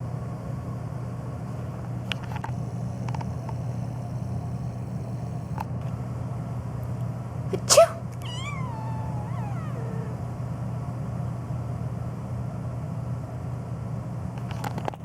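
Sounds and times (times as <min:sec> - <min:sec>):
steady low hum: 0:00.0 - 0:15.0
cat meowing: 0:08.2 - 0:10.2.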